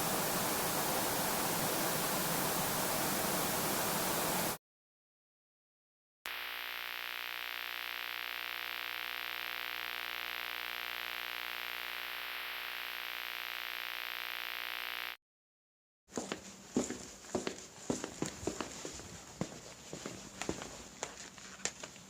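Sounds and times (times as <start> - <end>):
static-like hiss: 0.0 - 4.6, 6.3 - 15.2.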